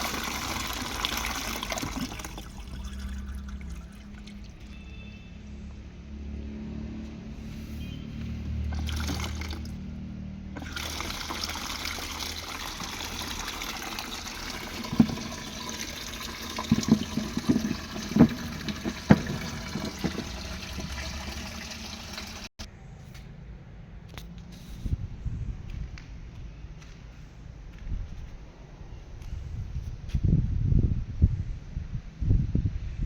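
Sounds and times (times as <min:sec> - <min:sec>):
water running and splashing: 0:00.0 - 0:04.7, 0:08.7 - 0:09.9, 0:10.6 - 0:22.6.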